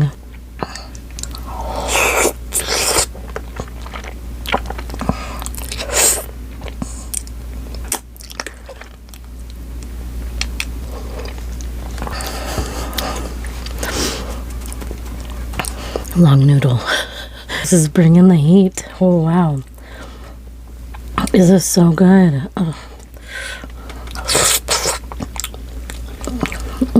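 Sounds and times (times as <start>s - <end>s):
wet chewing and biting: 1.0s - 9.6s, 10.4s - 16.2s, 23.0s - 26.7s.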